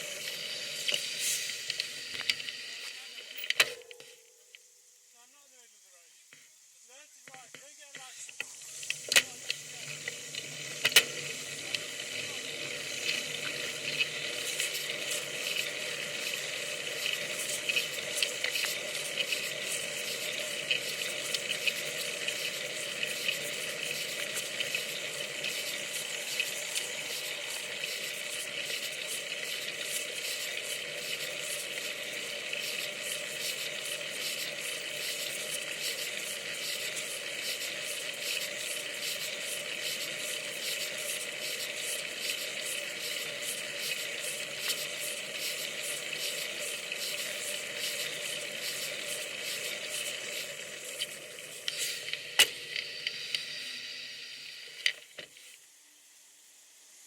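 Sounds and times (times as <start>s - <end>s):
wind hiss: 0.0s - 50.5s
road noise: 22.8s - 29.4s.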